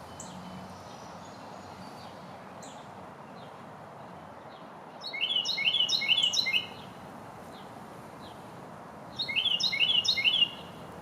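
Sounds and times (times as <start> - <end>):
steady background noise: 0.0 - 11.0
wren singing: 5.0 - 6.9, 9.2 - 10.8.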